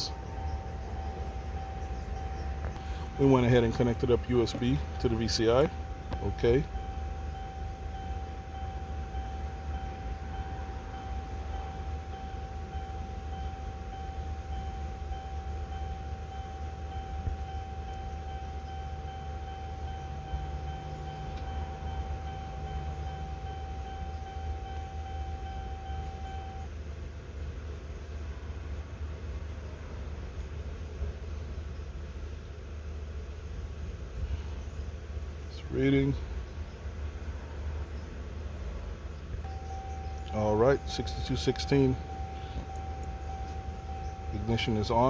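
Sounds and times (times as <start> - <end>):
car dashboard warning chime: 0.0 - 26.8, 39.4 - 45.0
ventilation blower hum: 39.3 - 45.0.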